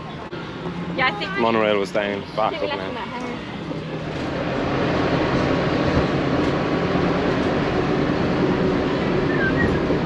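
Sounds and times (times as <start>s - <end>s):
monorail train running past: 0.0s - 10.0s.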